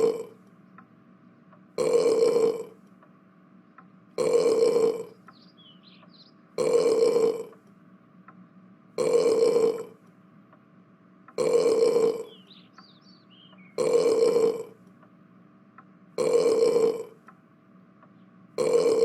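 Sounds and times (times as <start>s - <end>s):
loud burp: 0.0s - 0.4s, 1.8s - 2.8s, 4.2s - 5.2s, 6.6s - 7.6s, 9.0s - 10.0s, 11.4s - 12.4s, 13.8s - 14.8s, 16.2s - 17.2s, 18.6s - 19.0s.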